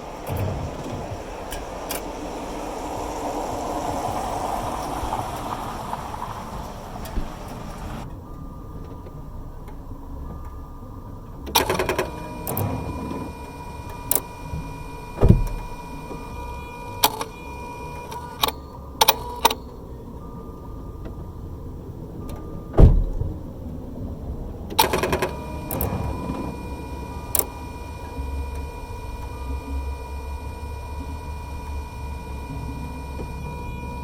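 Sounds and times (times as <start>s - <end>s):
car ignition clicking: 0.0s - 34.0s
faint steady whine: 0.0s - 34.0s
dull thumps: 12.6s - 17.3s, 22.7s - 23.5s.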